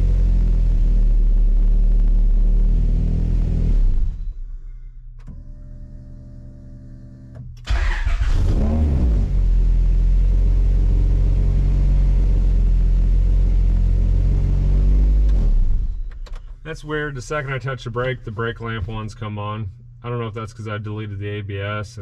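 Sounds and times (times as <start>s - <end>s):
car engine idling: 7.6s - 21.8s
engine cranking: 7.7s - 8.6s
faint steady hum: 16.0s - 22.0s.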